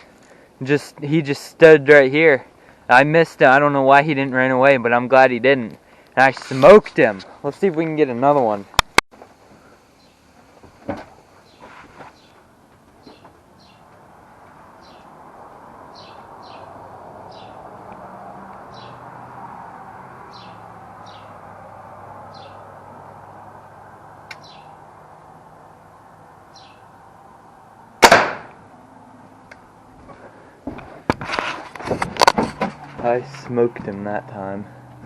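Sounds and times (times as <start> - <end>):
small bird chirps: 24.3 - 24.8, 26.5 - 26.9
pellet gun shot: 28.0 - 28.6.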